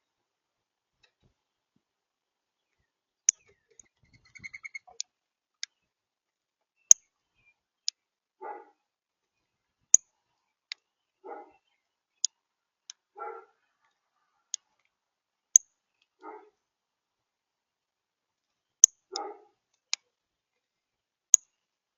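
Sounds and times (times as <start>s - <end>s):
bird twittering call: 3.3s - 5.0s
rough dog barks: 8.4s - 8.8s, 11.2s - 11.6s, 13.1s - 14.5s, 16.2s - 16.6s, 19.1s - 19.6s.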